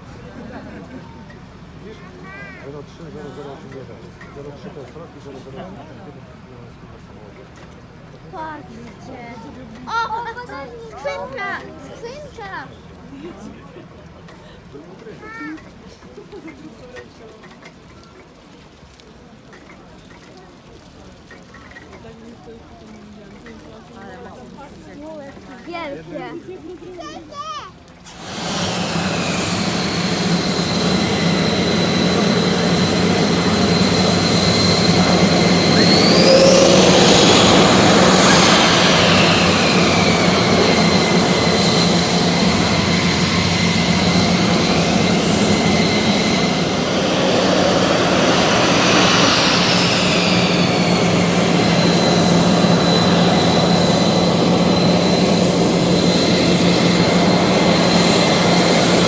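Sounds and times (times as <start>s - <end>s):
turbine engine whining: 27.7s - 59.0s.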